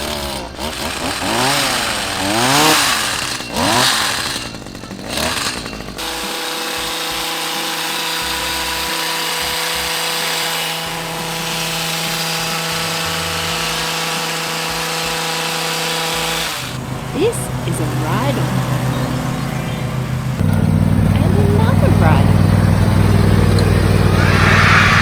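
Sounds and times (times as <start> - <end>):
toy power tool electronic whine: 0.0 - 16.9, 23.9 - 25.0
toy power tool buzzing drone: 0.0 - 20.6, 21.2 - 25.0.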